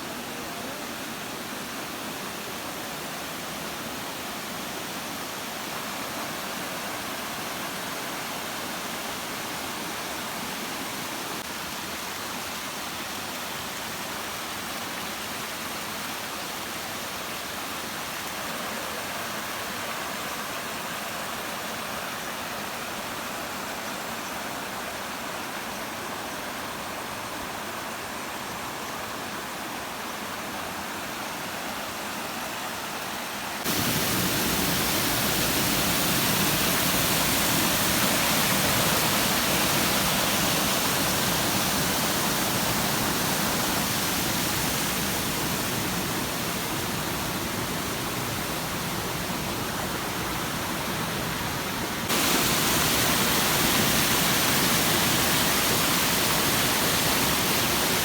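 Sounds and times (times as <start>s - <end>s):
waterfall rushing: 32.7s - 58.0s.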